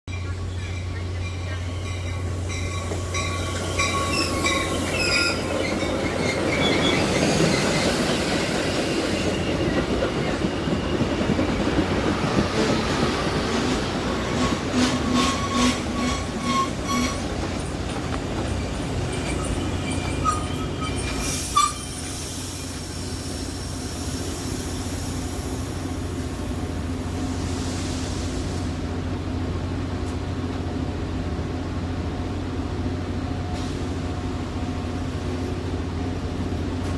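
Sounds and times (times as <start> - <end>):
train wheels squealing: 0.2 - 13.0, 14.2 - 17.8, 18.4 - 28.4.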